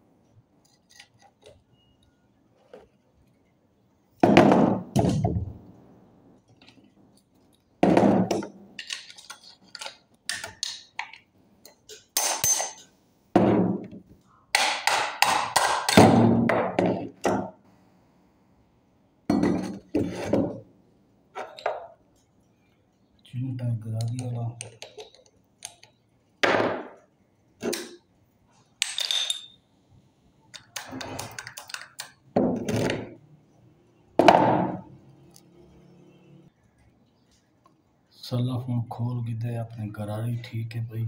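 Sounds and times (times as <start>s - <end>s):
metal parts knocking and clinking: 8.4s - 12.9s, 28.8s - 29.6s.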